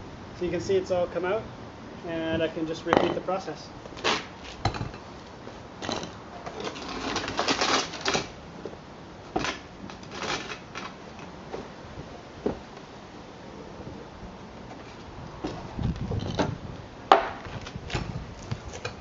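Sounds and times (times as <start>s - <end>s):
wooden pallet boards knocking: 17.1s - 17.4s.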